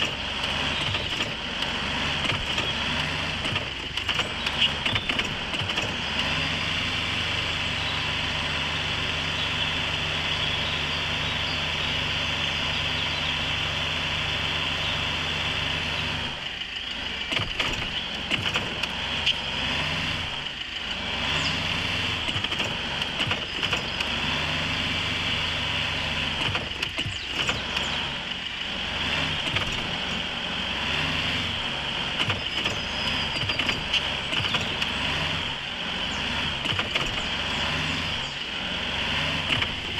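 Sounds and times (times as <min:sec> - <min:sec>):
knocks and rattles: 0:00.0 - 0:06.4, 0:17.2 - 0:19.5, 0:22.0 - 0:24.2, 0:26.3 - 0:28.1, 0:29.3 - 0:30.3, 0:32.2 - 0:35.5, 0:36.3 - 0:38.4, 0:39.4 - 0:39.9
off-road vehicle engine: 0:00.0 - 0:39.9.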